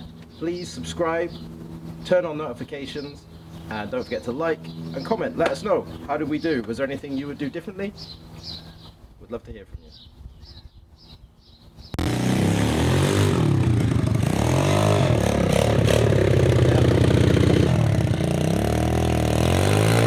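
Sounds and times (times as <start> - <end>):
motorbike engine revving: 12.0 - 20.0.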